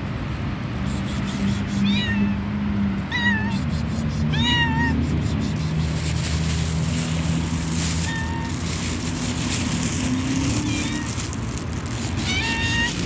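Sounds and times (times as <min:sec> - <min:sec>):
cat meowing: 0:01.7 - 0:02.4, 0:03.1 - 0:05.3, 0:07.9 - 0:08.7, 0:10.2 - 0:11.3, 0:12.1 - 0:13.0.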